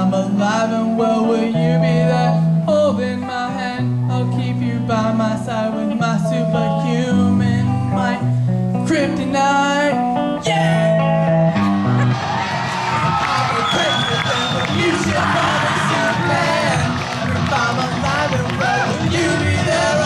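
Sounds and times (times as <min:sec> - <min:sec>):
acoustic guitar strumming chords: 0:05.8 - 0:20.0
person singing: 0:12.8 - 0:20.0.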